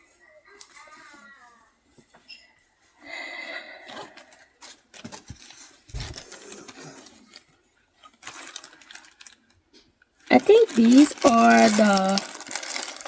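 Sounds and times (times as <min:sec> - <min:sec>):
plastic packaging crinkling: 0:04.9 - 0:07.4, 0:08.0 - 0:09.6, 0:10.3 - 0:13.0.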